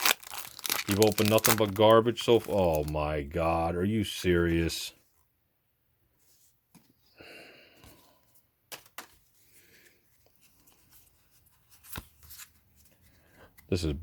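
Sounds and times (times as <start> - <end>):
cards rustling and clicking: 0.0 - 3.0, 8.7 - 13.9.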